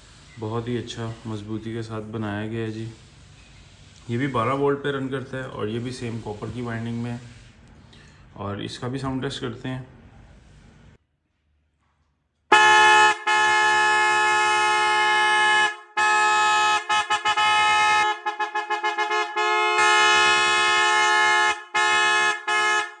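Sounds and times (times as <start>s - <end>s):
electric horn blasts: 12.5s - 23.0s
short horn toots: 12.5s - 23.0s.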